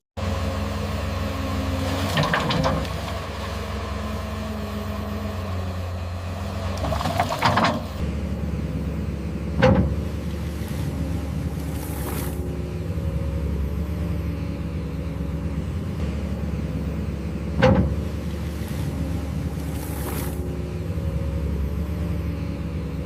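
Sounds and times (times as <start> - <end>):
diesel engine running: 0.2 - 23.0.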